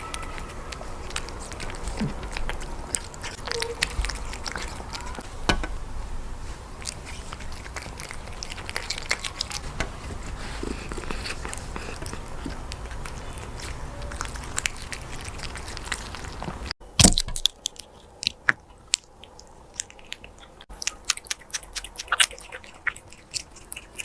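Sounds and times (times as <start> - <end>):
cat chewing and biting: 0.0 - 5.2, 6.6 - 24.0
sharp clicks and smacks: 11.0 - 24.0.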